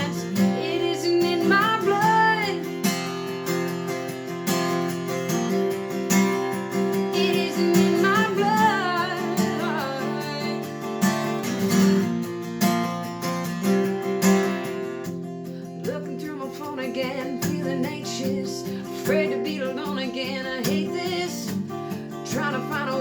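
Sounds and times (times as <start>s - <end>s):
person singing: 0.0s - 2.8s, 7.0s - 10.7s, 15.8s - 21.6s, 22.3s - 23.0s
acoustic guitar strumming: 0.0s - 23.0s.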